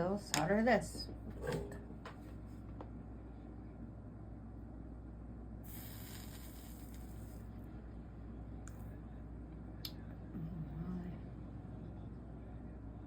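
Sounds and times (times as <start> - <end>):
steady low hum: 0.0 - 13.0
soldering iron hissing: 5.6 - 7.5.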